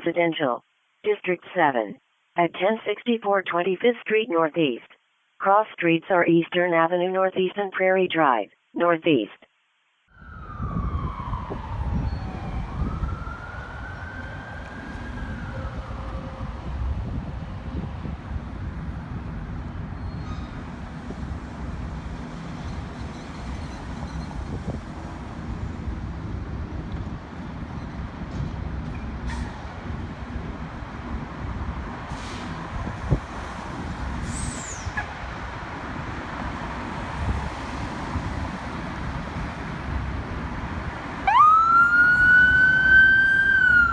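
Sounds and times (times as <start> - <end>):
siren wailing: 10.1 - 17.1, 41.2 - 43.9
low rumble of road noise: 10.1 - 43.9.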